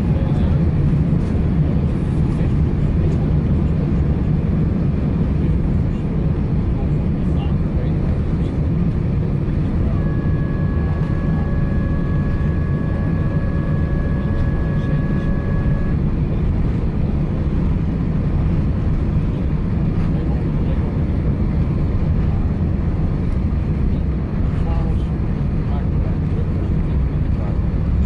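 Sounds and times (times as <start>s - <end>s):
airplane cabin engine roar: 0.0s - 28.0s
faint high whine: 9.4s - 17.1s.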